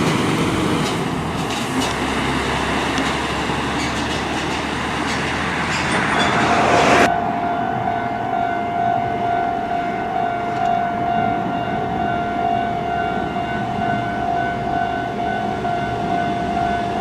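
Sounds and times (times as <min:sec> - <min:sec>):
heavy truck passing: 0:00.0 - 0:17.0
clacks: 0:02.8 - 0:07.1
steady high tone: 0:05.5 - 0:17.0.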